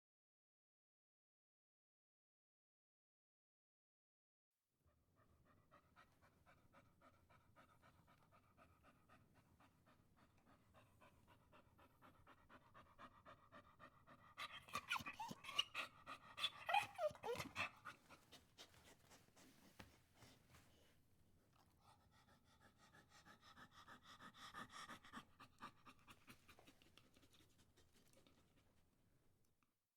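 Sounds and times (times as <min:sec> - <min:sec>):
dog whining and panting: 0:05.4 - 0:20.4.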